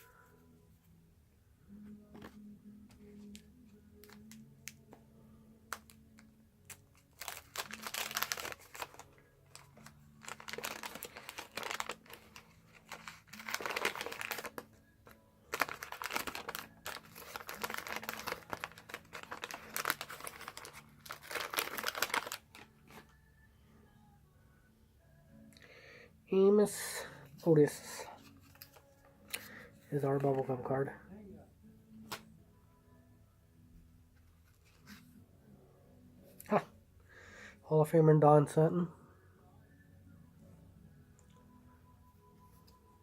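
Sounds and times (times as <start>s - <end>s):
wax paper wrapper crinkling: 5.7s - 23.1s, 27.6s - 30.7s.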